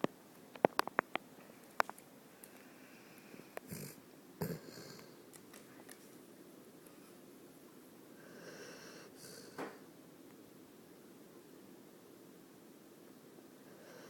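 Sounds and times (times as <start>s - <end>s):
dog snoring: 3.0s - 5.2s, 8.2s - 9.8s, 13.7s - 14.0s.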